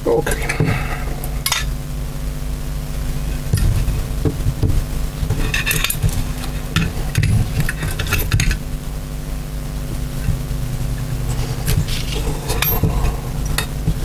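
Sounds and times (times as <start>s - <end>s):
low hum: 0.0s - 14.0s
metal parts and tools clinking: 11.9s - 12.9s.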